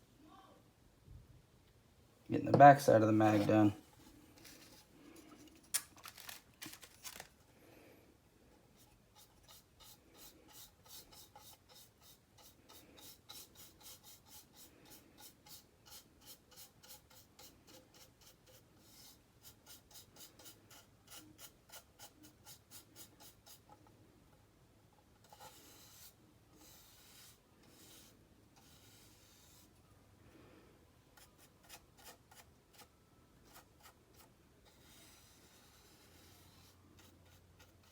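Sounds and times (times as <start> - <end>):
scratchy rubbing of paint on plastic: 25.0 - 29.8, 31.1 - 37.9.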